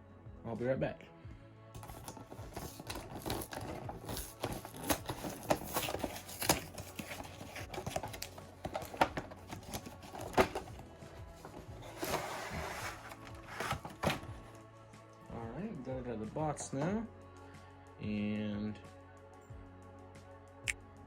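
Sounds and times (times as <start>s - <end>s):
packaging tearing: 1.8s - 10.7s
toy packaging crinkling and rustling: 1.8s - 14.3s.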